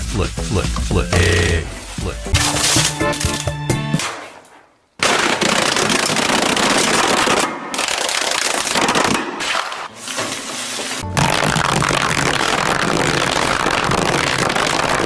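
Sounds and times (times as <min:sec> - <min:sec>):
loud dense crackling: 0:11.0 - 0:15.0.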